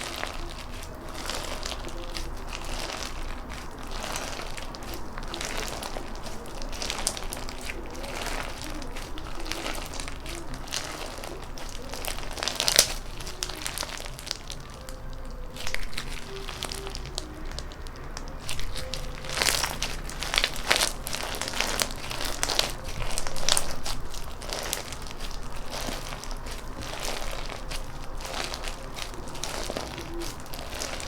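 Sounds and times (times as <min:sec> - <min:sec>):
slime crackling and popping: 0:00.0 - 0:31.0.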